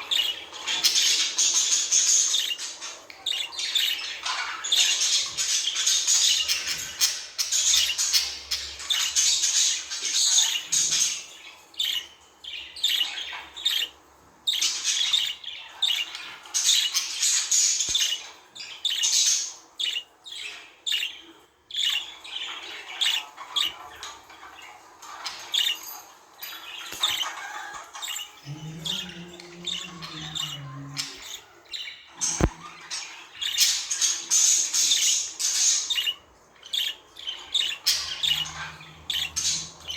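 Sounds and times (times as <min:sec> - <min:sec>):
budgerigars chattering: 0:26.7 - 0:39.9.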